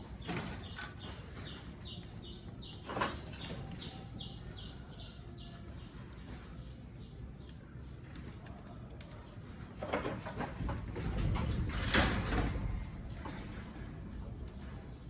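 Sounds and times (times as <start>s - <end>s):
small bird chirping: 0.0s - 8.0s.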